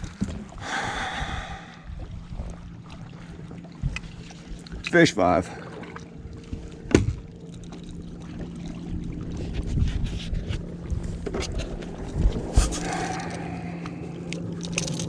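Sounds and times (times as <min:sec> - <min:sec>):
sharp knocks on boat: 0:06.5 - 0:07.3.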